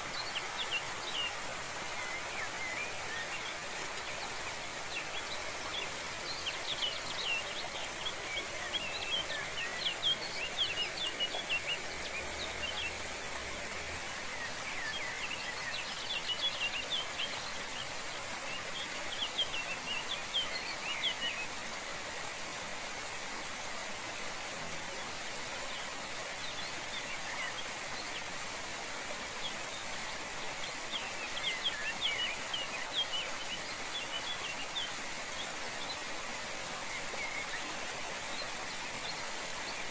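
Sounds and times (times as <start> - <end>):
falling water rushing: 0.0 - 39.9
songbirds chirping: 0.0 - 39.9.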